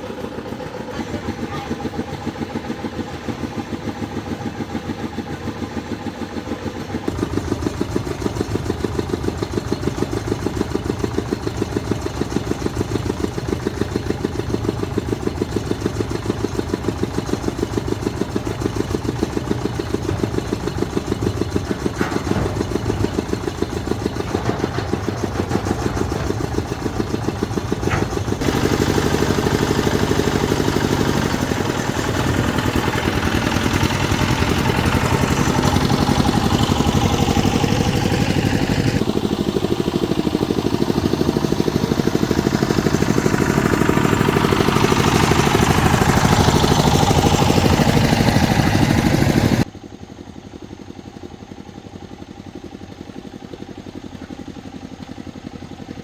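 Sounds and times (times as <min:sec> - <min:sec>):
motor running with fast pulse: 0:14.0 - 0:39.0.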